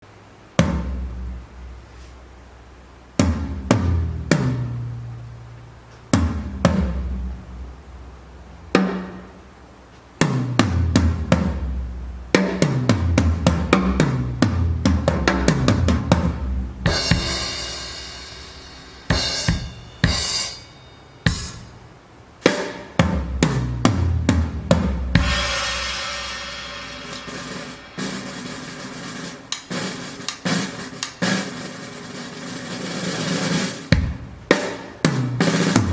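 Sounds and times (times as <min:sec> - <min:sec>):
fast drum strokes: 0:00.4 - 0:35.9
deep drum hits: 0:00.6 - 0:01.9, 0:03.2 - 0:05.0, 0:06.1 - 0:09.4, 0:10.2 - 0:21.8, 0:22.5 - 0:29.2, 0:34.0 - 0:35.9
cymbal crash: 0:16.9 - 0:21.8, 0:25.2 - 0:30.6.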